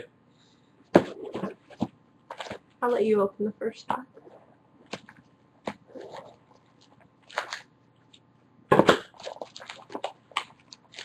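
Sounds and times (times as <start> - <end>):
cellophane crinkling and tearing: 5.7 - 7.7, 8.9 - 11.0.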